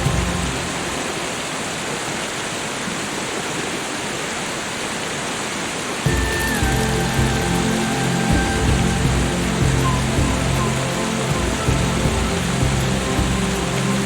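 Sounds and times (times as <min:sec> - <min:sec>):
water rushing: 0:00.0 - 0:14.0
soft music with held tones: 0:06.1 - 0:14.0.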